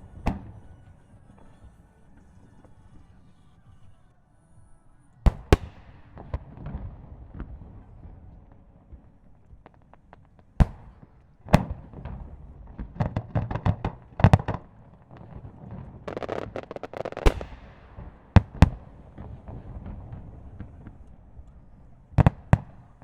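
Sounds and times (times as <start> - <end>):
firework shells booming: 5.3 - 23.0
firework crackling hiss: 9.3 - 20.9.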